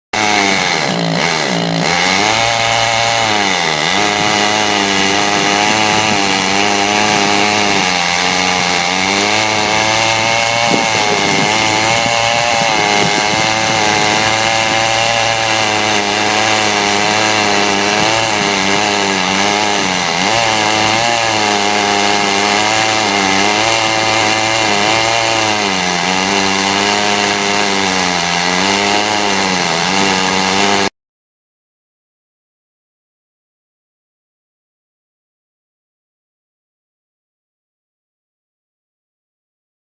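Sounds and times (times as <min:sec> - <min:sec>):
chainsaw cutting lumber: 0:00.1 - 0:30.9.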